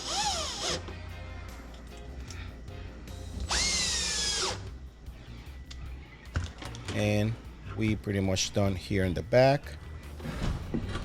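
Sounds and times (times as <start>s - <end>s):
cordless drill driving screw: 0.0s - 0.8s, 3.5s - 4.6s.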